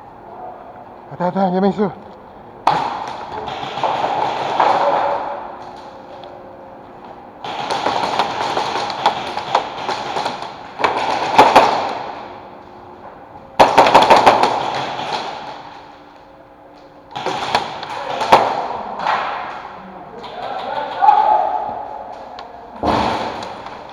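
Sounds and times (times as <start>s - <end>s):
airsoft guns firing bursts: 2.6s - 6.0s, 7.4s - 12.5s, 13.6s - 16.0s, 17.1s - 19.6s.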